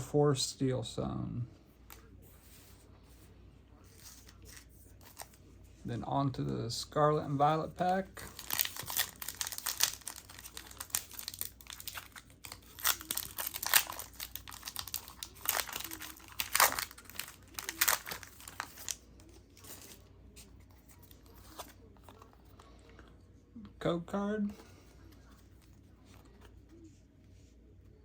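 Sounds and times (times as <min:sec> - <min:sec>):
foil wrapper crinkling and tearing: 0:08.2 - 0:20.0.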